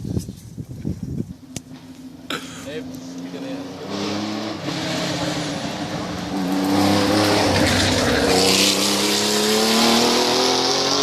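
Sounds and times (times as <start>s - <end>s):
rally car engine accelerating: 2.3s - 11.0s.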